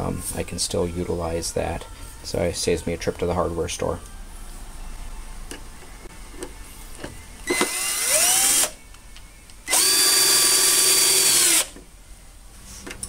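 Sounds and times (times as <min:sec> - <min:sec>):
power drill whining: 0:07.4 - 0:08.8, 0:09.7 - 0:11.8.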